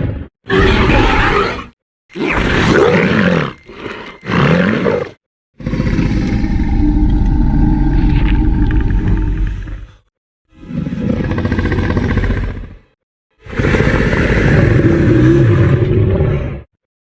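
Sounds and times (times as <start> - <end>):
dinosaur roars: 0.5 - 12.8, 13.4 - 16.7
low rumbling growl: 5.6 - 16.7.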